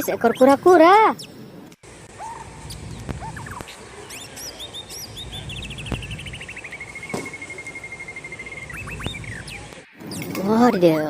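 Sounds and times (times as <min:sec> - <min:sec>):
bird chirping and trilling: 0:00.0 - 0:11.0.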